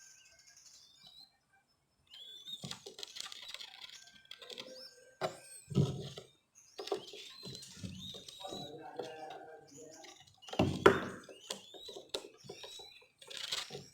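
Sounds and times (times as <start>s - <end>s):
dove chicks squeaking: 2.0s - 13.9s
rustling and clicks: 11.5s - 13.9s.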